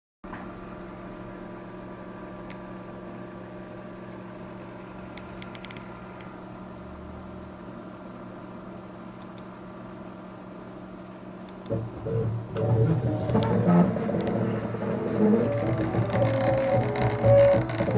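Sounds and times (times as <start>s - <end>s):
machine motor humming: 11.6s - 17.9s.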